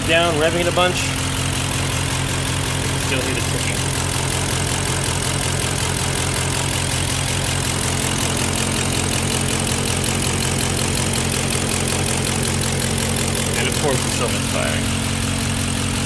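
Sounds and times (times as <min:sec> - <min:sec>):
engine idling with misfire: 0:00.0 - 0:16.0
rapid valvetrain ticking: 0:00.0 - 0:16.0.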